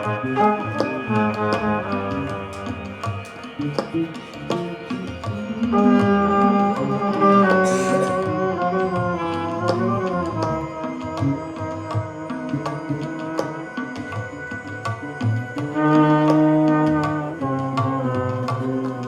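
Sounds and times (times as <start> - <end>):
long held melodic note: 0.0 - 10.8
scattered hand percussion: 0.0 - 19.0.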